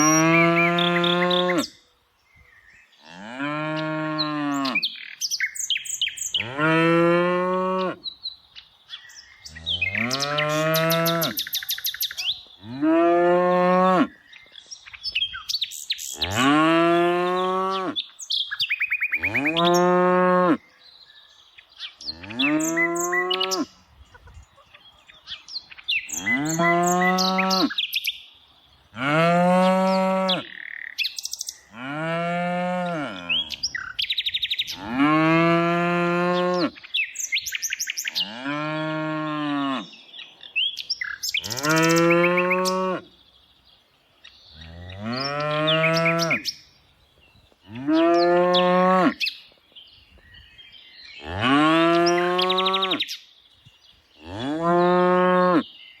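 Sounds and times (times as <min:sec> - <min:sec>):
cow mooing: 0:00.0 - 0:01.7, 0:09.5 - 0:11.4, 0:19.2 - 0:20.6, 0:26.1 - 0:27.7, 0:31.8 - 0:33.8, 0:34.7 - 0:36.7, 0:38.2 - 0:39.9, 0:41.4 - 0:43.1, 0:44.6 - 0:46.4, 0:51.2 - 0:53.0
birds chirping faintly: 0:00.0 - 0:56.0.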